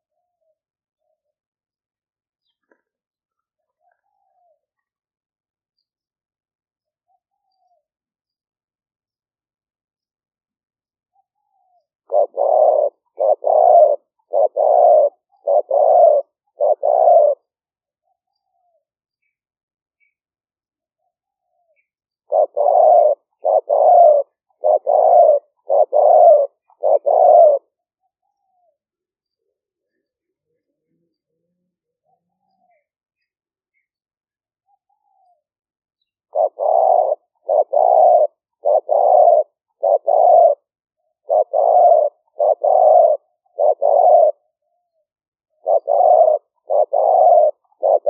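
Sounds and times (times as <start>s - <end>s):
dove cooing: 0.0s - 1.3s, 11.1s - 18.8s, 21.0s - 33.9s, 34.6s - 48.0s.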